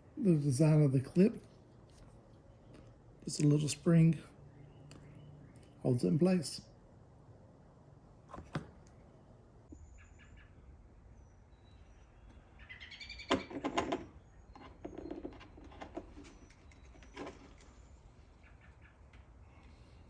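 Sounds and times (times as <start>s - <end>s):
songbirds chirping and whistling: 2.4s - 6.4s, 8.9s - 20.0s.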